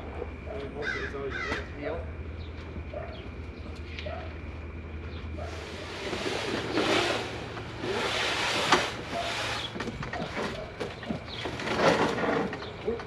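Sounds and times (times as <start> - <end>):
cardboard box scraping on ladder: 5.4 - 10.7, 11.3 - 12.7.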